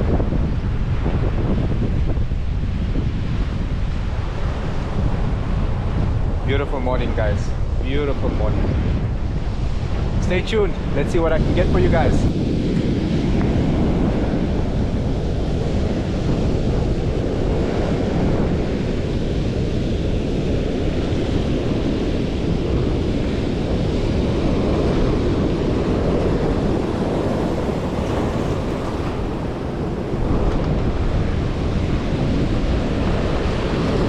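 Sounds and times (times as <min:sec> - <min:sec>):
wind buffeting microphone: 0:00.0 - 0:34.0
sea waves washing in: 0:08.6 - 0:34.0.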